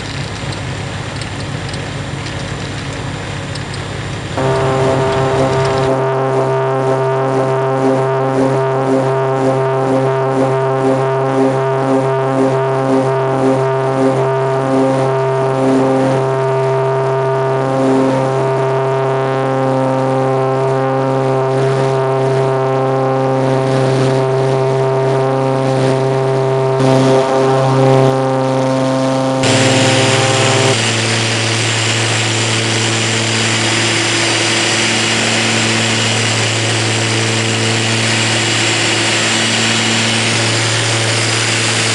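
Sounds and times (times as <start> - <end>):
aircraft engines droning in cabin: 0.0 - 41.9
rushing hiss: 29.4 - 41.9.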